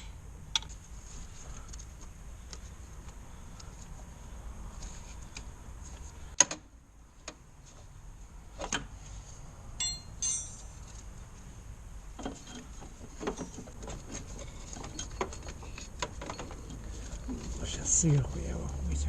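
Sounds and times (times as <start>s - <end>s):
hand tools clicking and clinking: 9.8s - 10.8s.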